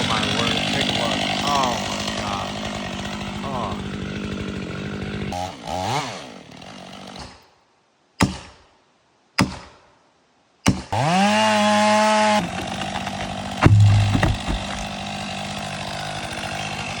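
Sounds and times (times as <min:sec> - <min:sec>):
chainsaw engine revving: 0:00.0 - 0:07.2, 0:11.0 - 0:17.0
heavy thud: 0:13.6 - 0:14.9
sharp knocks: 0:13.6 - 0:15.0.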